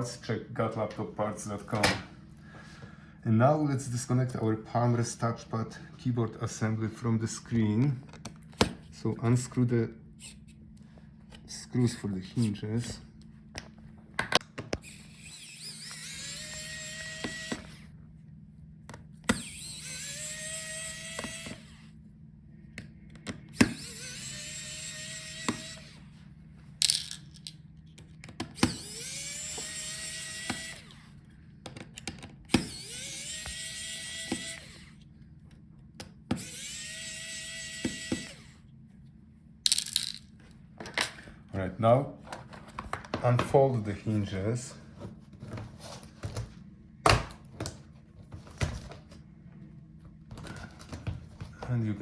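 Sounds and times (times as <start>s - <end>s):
electric screwdriver whine: 14.7s - 17.9s, 19.2s - 21.9s, 23.5s - 26.1s, 28.6s - 31.2s, 32.5s - 35.0s, 36.3s - 38.6s
clicks of bit and screws: 39.7s - 40.3s.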